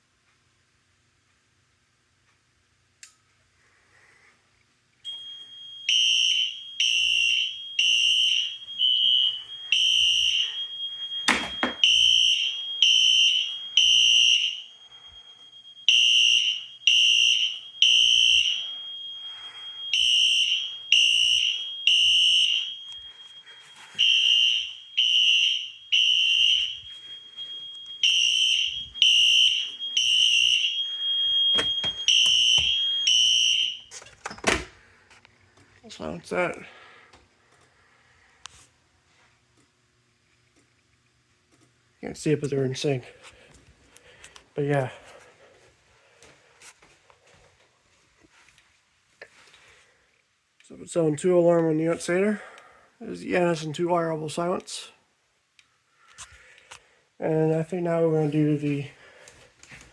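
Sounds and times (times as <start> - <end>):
steady high-pitched tone: 5.1 - 33.6
fire alarm horn blasts: 5.1 - 34.0.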